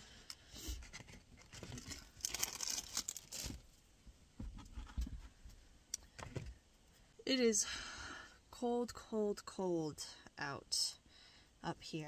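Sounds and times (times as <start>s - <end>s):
rustling and crinkling handling noise: 0.5s - 7.1s.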